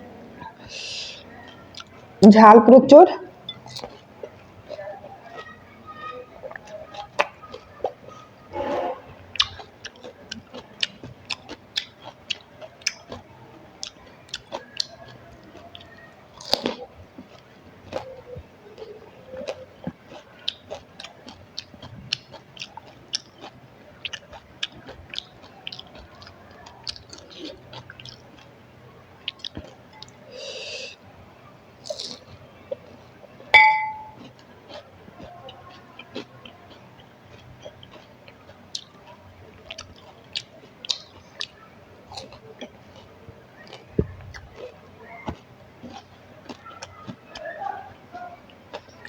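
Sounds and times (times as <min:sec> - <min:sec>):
crunchy chewing: 0:03.5 - 0:30.8, 0:31.7 - 0:33.5, 0:34.1 - 0:49.0.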